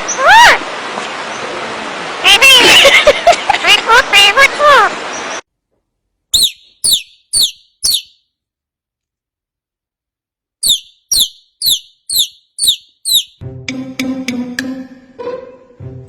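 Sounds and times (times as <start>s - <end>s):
bird chirping: 6.3s - 8.4s, 10.6s - 13.4s.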